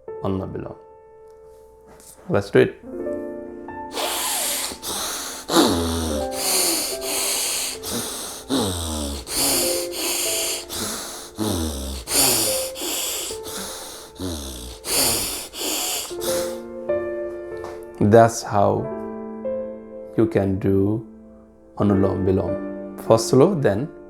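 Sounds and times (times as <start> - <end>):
soft background music: 0.0 - 24.0
rapid breathing through the nose: 3.8 - 16.8.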